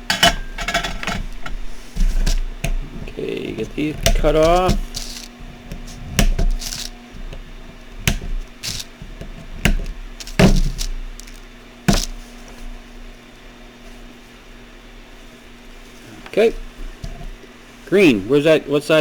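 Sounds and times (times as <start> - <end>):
side cutters snipping: 3.6 - 7.0, 8.1 - 9.0.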